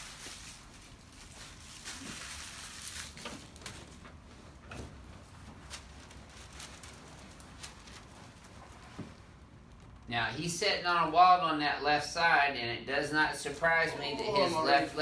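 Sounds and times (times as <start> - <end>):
soft rustles and taps: 3.2 - 10.1
faint hum: 5.8 - 15.0.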